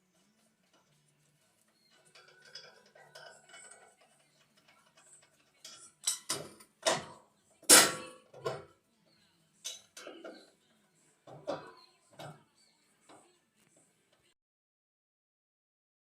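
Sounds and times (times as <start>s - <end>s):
metal tools clanking: 1.8s - 8.7s.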